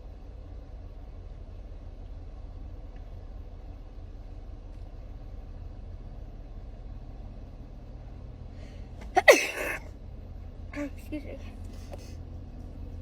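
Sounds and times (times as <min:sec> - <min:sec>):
steady low hum: 0:00.0 - 0:13.0
person sneezing: 0:09.0 - 0:09.8.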